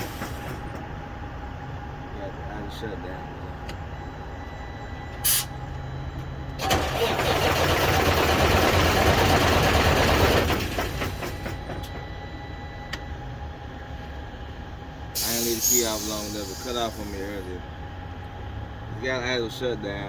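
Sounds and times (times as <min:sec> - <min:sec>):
diesel engine idling: 0:00.0 - 0:20.0
loud air hiss: 0:15.2 - 0:17.3.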